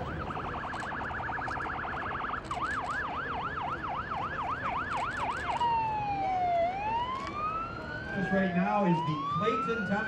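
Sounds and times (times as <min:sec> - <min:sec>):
siren yelping and wailing: 0:05.6 - 0:10.0.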